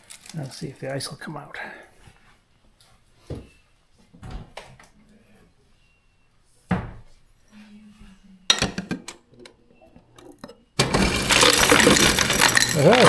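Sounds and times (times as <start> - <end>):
low steady dispenser hum: 10.2 - 13.0.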